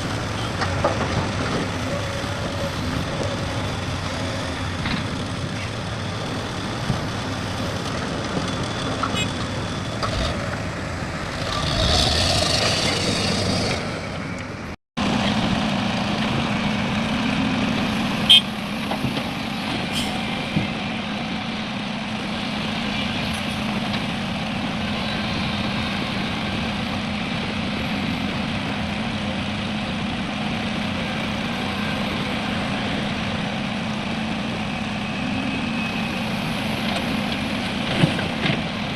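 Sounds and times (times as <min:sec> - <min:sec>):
heavy diesel engines running: 0:00.0 - 0:38.9.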